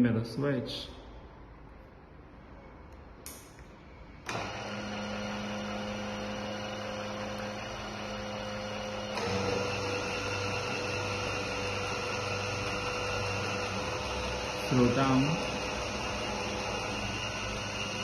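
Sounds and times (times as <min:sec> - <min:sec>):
electric gate motors humming: 0:04.2 - 0:18.0.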